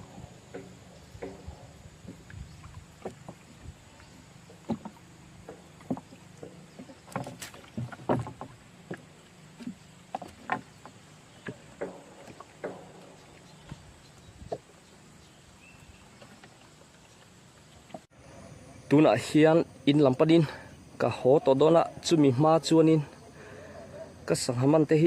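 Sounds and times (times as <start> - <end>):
light splashes in water: 0.0 - 14.8.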